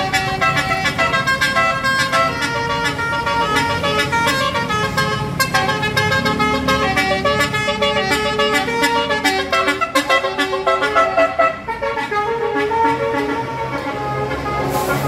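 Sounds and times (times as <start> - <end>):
bus multi-tone horn melody: 0.0 - 15.0.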